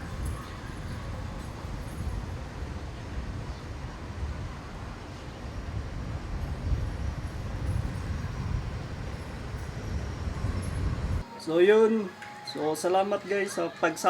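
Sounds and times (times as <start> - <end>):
wind buffeting microphone: 0.0 - 11.2.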